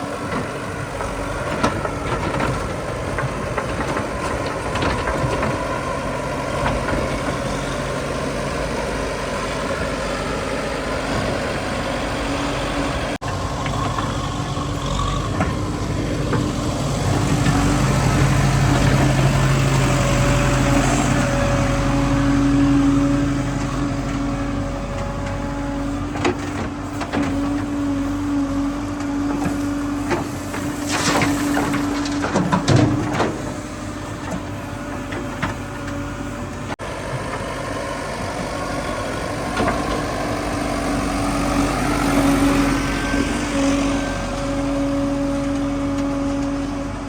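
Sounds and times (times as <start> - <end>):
diesel engine running: 0.0 - 47.0
knocks and clanks: 0.2 - 8.0, 13.2 - 21.6, 28.8 - 36.7.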